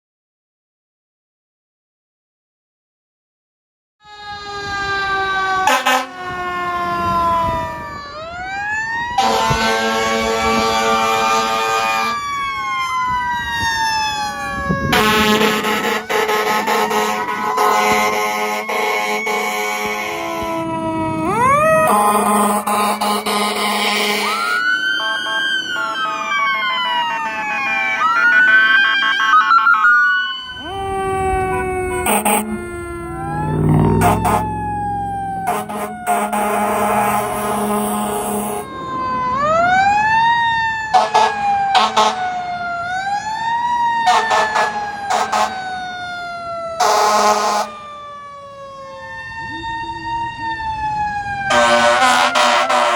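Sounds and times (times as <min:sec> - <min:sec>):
emergency vehicle siren wailing: 0:04.0 - 0:52.9
stepped siren tones: 0:04.0 - 0:52.9
harsh horn blasts: 0:05.6 - 0:06.2, 0:09.2 - 0:12.2, 0:14.9 - 0:20.2, 0:21.8 - 0:26.3, 0:31.9 - 0:38.6, 0:41.0 - 0:42.3, 0:44.1 - 0:45.6, 0:46.8 - 0:47.7, 0:51.5 - 0:52.9.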